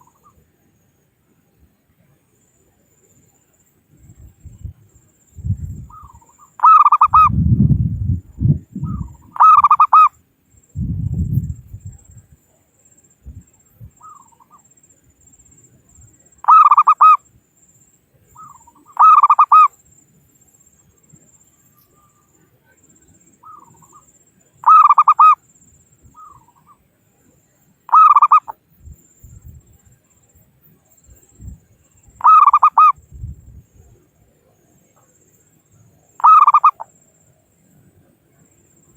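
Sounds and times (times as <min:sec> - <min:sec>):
dove cooing: 0:05.9 - 0:07.6, 0:08.8 - 0:10.1, 0:16.5 - 0:17.2, 0:18.4 - 0:19.7, 0:24.6 - 0:25.4, 0:27.9 - 0:28.5, 0:32.2 - 0:33.0, 0:36.2 - 0:36.8.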